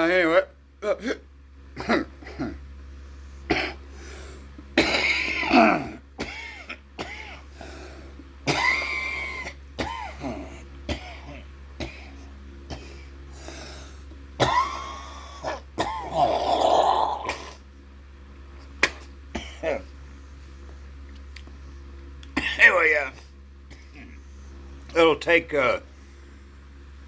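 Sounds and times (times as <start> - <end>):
man clearing his throat: 0.8 - 2.6, 3.5 - 3.8, 4.8 - 7.5, 8.5 - 13.1, 14.4 - 17.6, 18.8 - 19.9, 22.3 - 22.8, 23.7 - 24.2
man coughing: 0.8 - 2.6, 3.5 - 3.8, 4.8 - 7.5, 8.4 - 13.1, 14.4 - 17.6, 18.8 - 19.9, 22.3 - 24.2
catches of breath: 2.9 - 4.6, 7.3 - 11.4, 12.8 - 14.2, 25.9 - 26.8.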